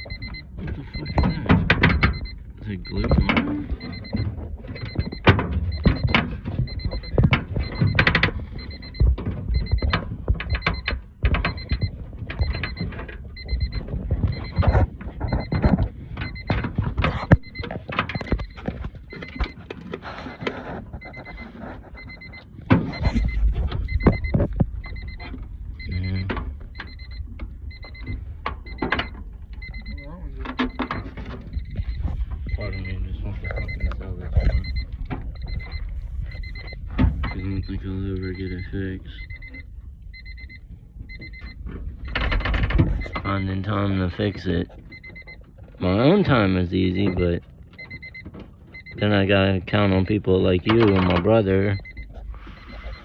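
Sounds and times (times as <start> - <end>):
clicks and knocks of door parts: 0.0 - 2.3, 3.0 - 20.0
car warning chime beeping: 0.0 - 53.0.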